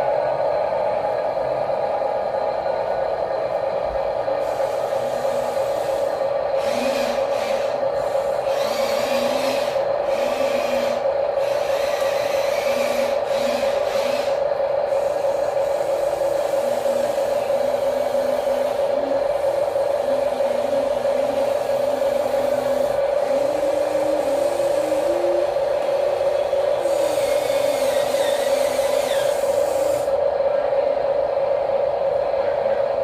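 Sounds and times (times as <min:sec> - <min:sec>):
small electric motor whine: 0:04.6 - 0:14.4, 0:16.0 - 0:25.6, 0:26.8 - 0:30.1.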